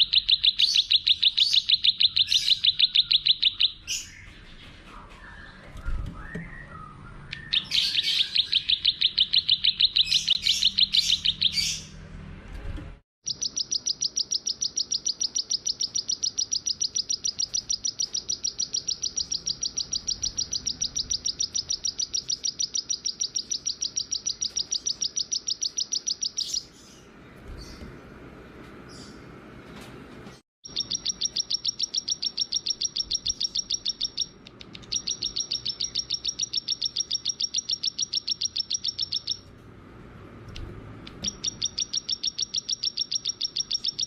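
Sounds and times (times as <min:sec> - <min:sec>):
songbird trilling: 0:00.0 - 0:04.2, 0:06.5 - 0:11.9, 0:13.3 - 0:27.0, 0:30.7 - 0:39.4, 0:41.2 - 0:44.0.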